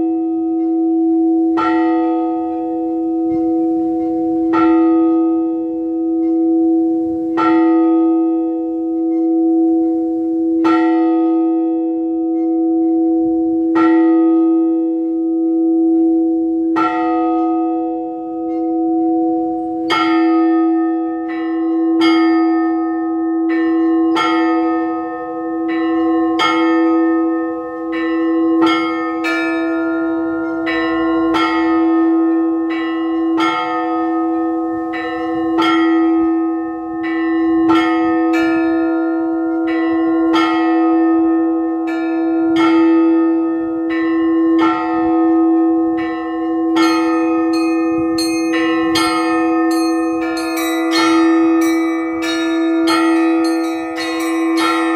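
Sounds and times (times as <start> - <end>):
deep church bell: 0.0 - 54.9
small high bells ringing: 46.0 - 54.9.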